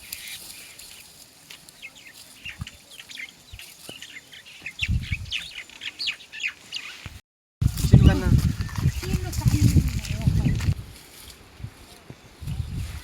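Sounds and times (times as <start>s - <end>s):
small birds chirping: 0.0s - 7.2s.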